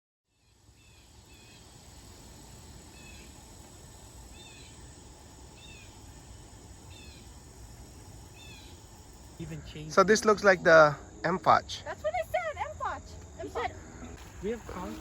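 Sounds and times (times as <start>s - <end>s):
bird chirping: 4.3s - 10.0s.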